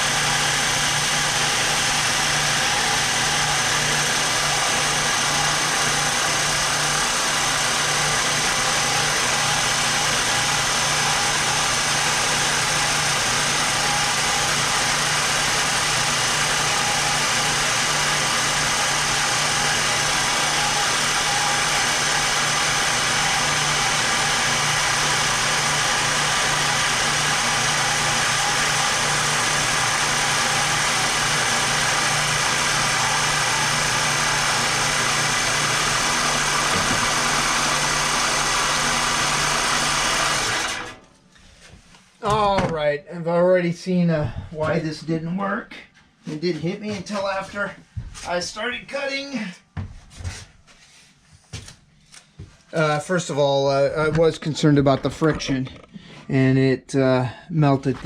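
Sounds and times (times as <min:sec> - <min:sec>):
power saw motor whine: 0:00.0 - 0:41.2.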